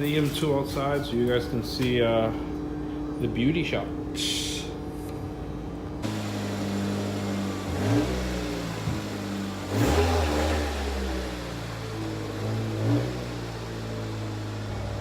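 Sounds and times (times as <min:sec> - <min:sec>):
car engine revving: 0:06.0 - 0:15.0.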